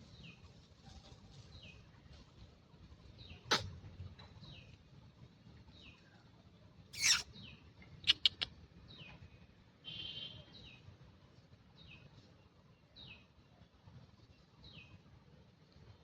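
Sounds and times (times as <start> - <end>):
bird trill: 7.0 - 7.2
bird chirping: 7.0 - 9.2.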